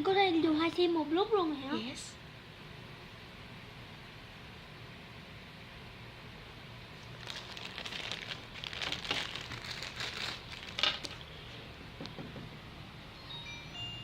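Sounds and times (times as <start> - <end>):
plastic packaging crinkling: 7.0 - 11.4.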